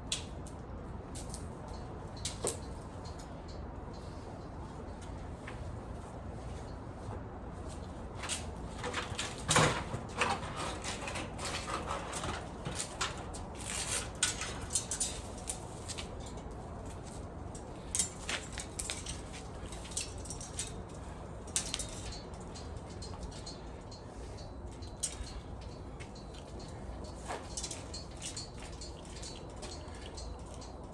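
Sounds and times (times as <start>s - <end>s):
clicks and rustling from hands: 8.2s - 30.9s.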